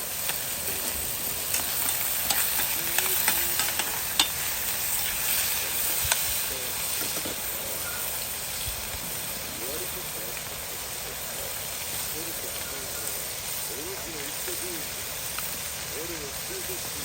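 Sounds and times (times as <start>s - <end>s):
steady sizzling hiss: 0.0s - 17.0s
utensils scraping a pot: 0.4s - 6.3s.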